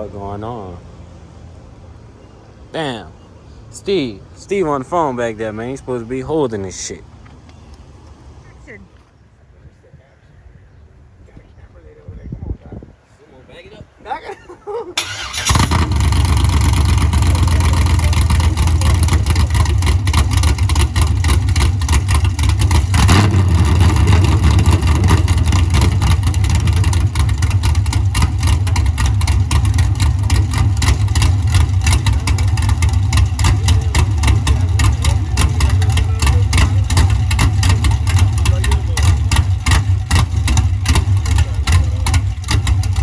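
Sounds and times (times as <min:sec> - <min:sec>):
engine idling loudly with choppy beat: 0:15.4 - 0:43.0.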